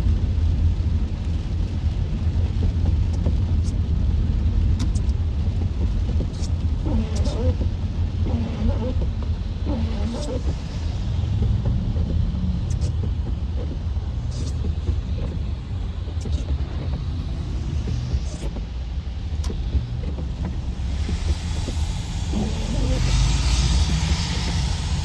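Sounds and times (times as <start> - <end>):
tyres and engine rumble: 0.0 - 25.0
hiss of wet spray: 20.6 - 25.0.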